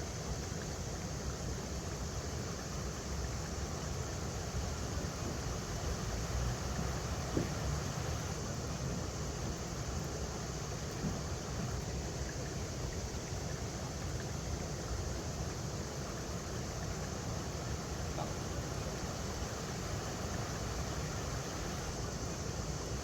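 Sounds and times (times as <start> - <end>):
river water rushing over rocks: 3.9 - 23.0.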